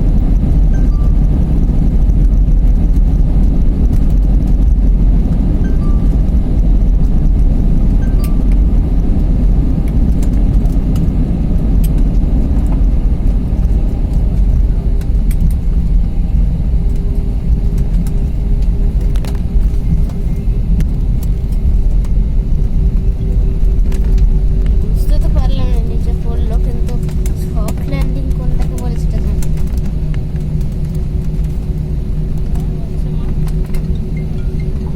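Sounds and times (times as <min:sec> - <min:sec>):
airliner cabin rumble: 0:00.0 - 0:34.9
faint steady whine: 0:00.0 - 0:34.9
light rattles and clicks: 0:23.9 - 0:31.8.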